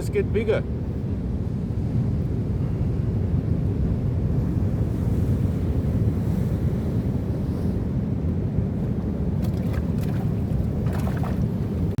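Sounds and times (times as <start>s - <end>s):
wind buffeting microphone: 0.0s - 12.0s
sea surf: 2.6s - 11.9s.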